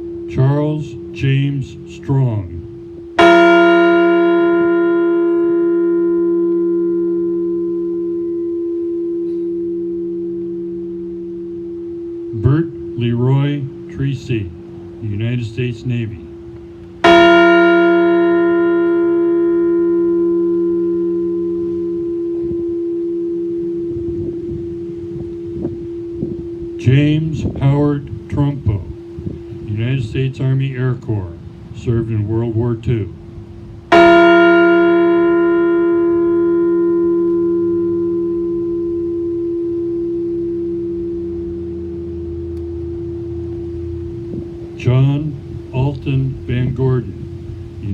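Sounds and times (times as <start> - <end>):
large bell ringing: 0.0 - 47.9
bell ringing after a strike: 3.2 - 9.8, 17.0 - 22.7.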